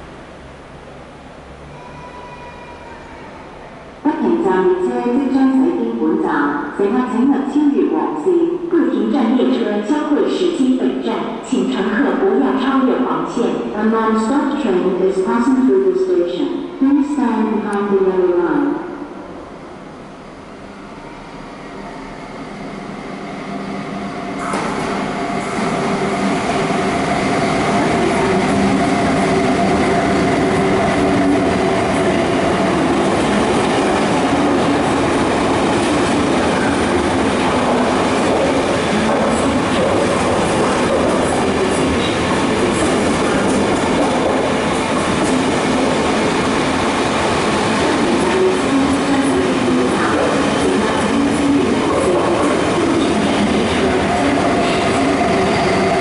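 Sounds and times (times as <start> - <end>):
train wheels rumbling on track: 20.9 - 56.0.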